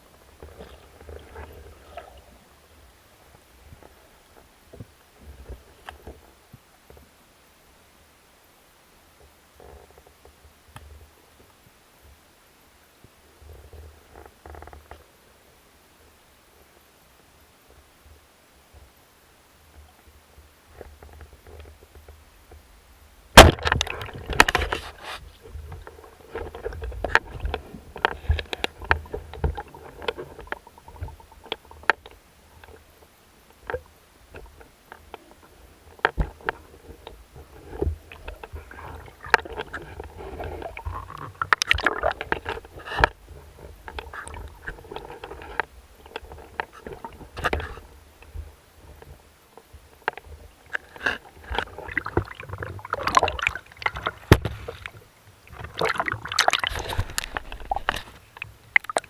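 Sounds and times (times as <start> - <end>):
water sloshing and gurgling: 0.0 - 6.3, 20.7 - 59.0.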